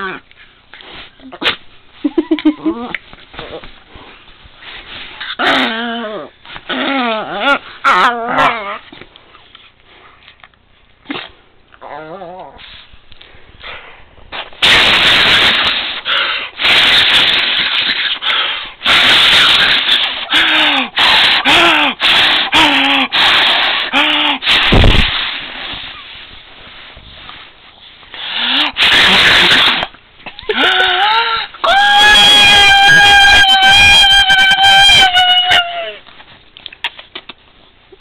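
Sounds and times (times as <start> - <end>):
pet sneezing and snorting: 0.9 - 1.7, 11.0 - 11.4, 13.6 - 26.2, 28.2 - 30.0.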